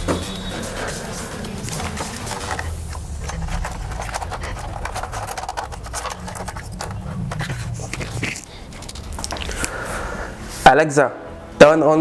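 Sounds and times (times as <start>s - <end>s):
steady low rumble: 2.4s - 10.5s.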